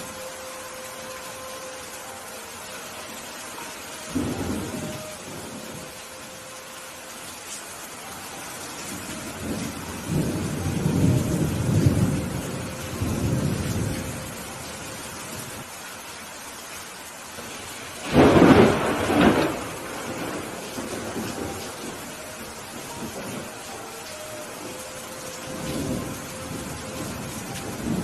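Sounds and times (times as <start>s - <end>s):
steady rain: 0.0s - 28.0s
thunder rumbling: 4.1s - 6.0s, 8.8s - 15.6s, 17.4s - 28.0s.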